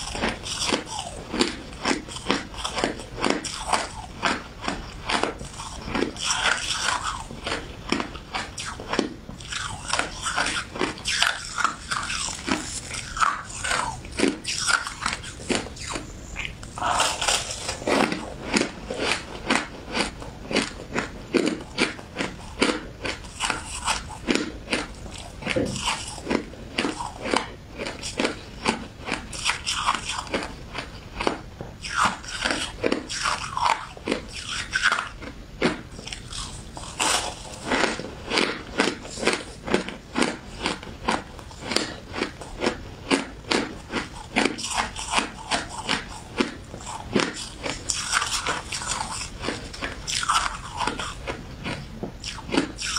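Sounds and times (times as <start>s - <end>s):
shaved ice crunching: 16.8s - 19.2s.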